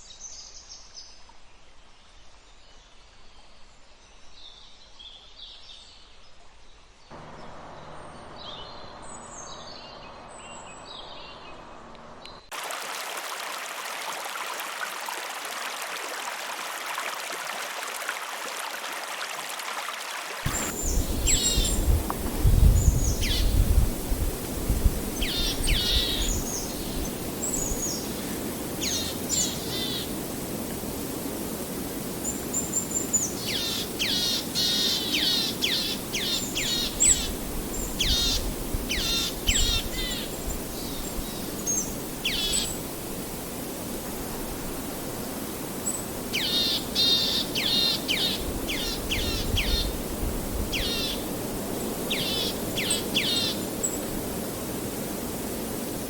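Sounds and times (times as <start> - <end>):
songbirds calling: 6.7 - 12.5, 20.5 - 43.9, 44.8 - 54.2
river flowing: 7.1 - 56.0.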